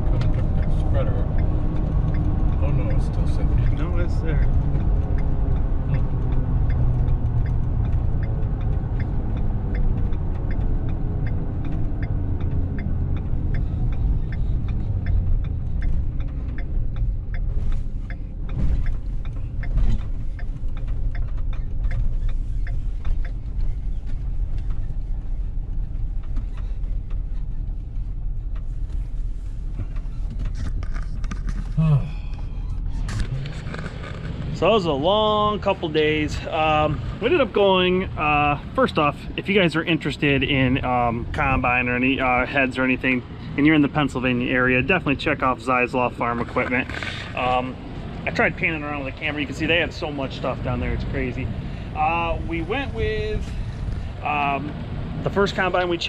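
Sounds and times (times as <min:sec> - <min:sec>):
engine and road rumble: 0:00.0 - 0:56.0
quick light ticks: 0:00.2 - 0:34.6.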